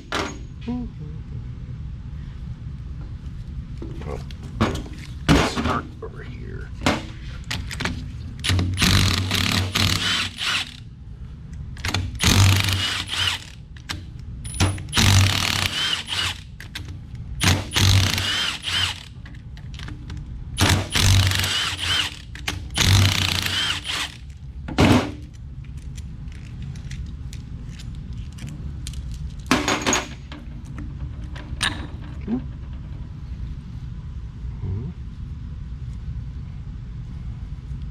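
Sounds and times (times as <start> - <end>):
power tool bursts: 8.8 - 10.8, 12.2 - 13.6, 15.0 - 16.4, 17.4 - 19.1, 20.6 - 22.2, 22.8 - 24.2.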